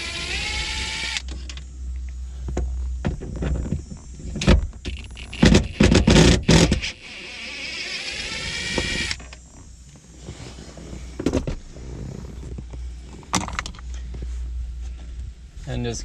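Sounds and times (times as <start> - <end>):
small electric motor whirring: 0.0 - 1.4, 4.9 - 9.4
sharp clicks and knocks: 2.6 - 6.9.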